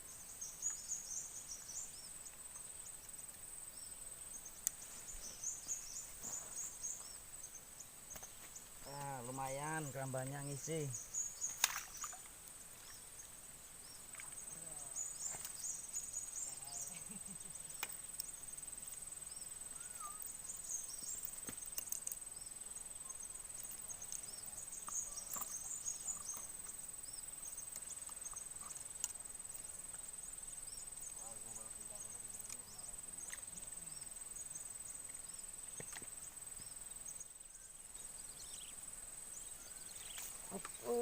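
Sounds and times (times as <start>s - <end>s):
insects trilling: 0.0s - 41.0s
faint clicks: 21.0s - 22.2s.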